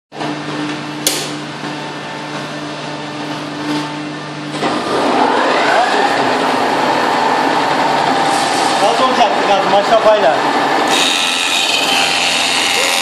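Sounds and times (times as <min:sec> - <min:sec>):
milling machine humming: 0:00.2 - 0:13.0
sharp click: 0:01.0 - 0:01.4
cutting sound with whine: 0:10.2 - 0:13.0.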